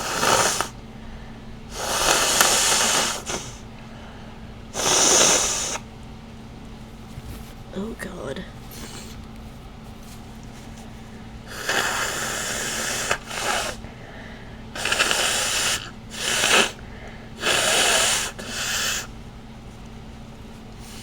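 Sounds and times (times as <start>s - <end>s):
person blowing nose: 0.0s - 0.8s, 1.7s - 3.7s, 4.7s - 5.8s, 11.5s - 13.9s, 14.8s - 16.8s, 17.4s - 19.1s.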